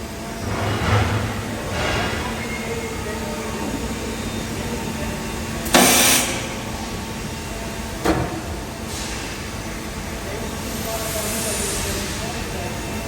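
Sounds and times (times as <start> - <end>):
factory machinery noise: 0.0 - 13.0
loud hiss of air: 5.6 - 7.3, 8.6 - 12.7.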